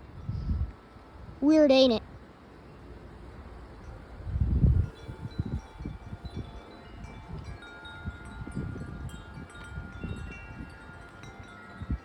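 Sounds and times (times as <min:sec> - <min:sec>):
wind buffeting microphone: 0:00.0 - 0:00.8, 0:03.8 - 0:12.0
wind chimes ringing: 0:02.5 - 0:12.0.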